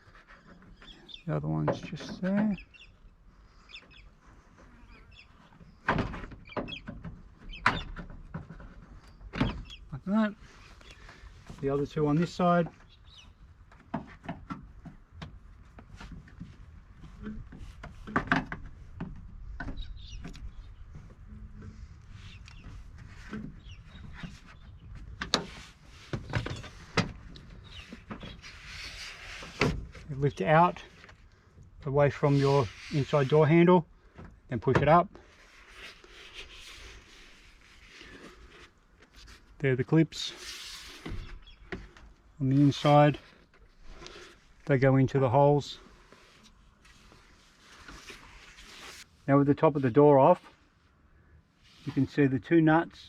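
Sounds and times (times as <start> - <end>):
faint birdsong: 0.0 - 14.1, 19.1 - 34.3, 35.2 - 46.6.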